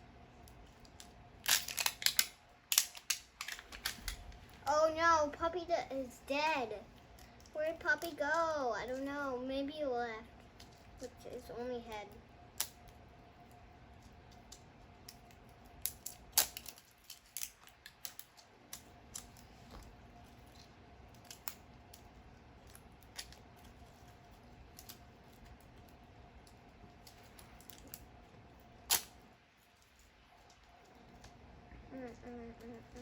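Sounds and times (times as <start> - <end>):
plastic pieces clicking: 0.8 - 4.2, 15.8 - 19.4.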